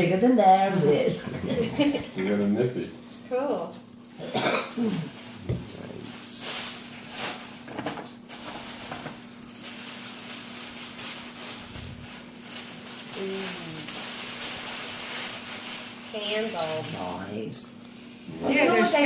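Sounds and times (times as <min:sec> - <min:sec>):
steady low hum: 0:00.0 - 0:19.0
wrapping paper rustling: 0:06.1 - 0:17.2.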